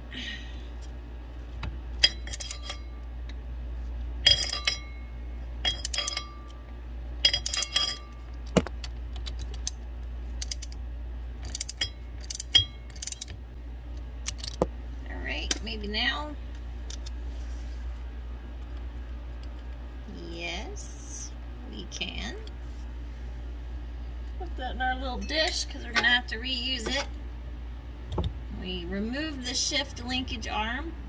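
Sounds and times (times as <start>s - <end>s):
low steady hum: 0.0s - 31.0s
metal wrench clicking on bolt: 2.0s - 2.8s, 4.2s - 4.9s, 5.6s - 6.3s, 7.2s - 8.1s, 10.4s - 10.8s, 11.4s - 13.4s, 14.2s - 14.6s.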